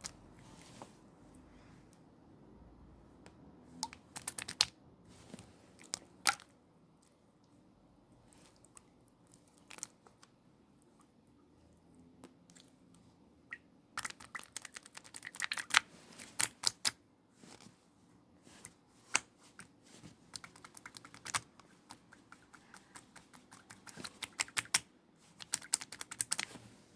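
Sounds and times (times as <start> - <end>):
slime clicking and popping: 3.8 - 4.8, 16.4 - 17.0, 20.4 - 26.4.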